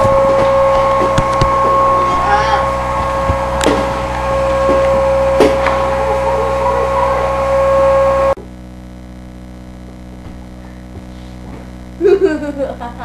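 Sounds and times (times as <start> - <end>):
vacuum cleaner running: 0.0 - 8.4.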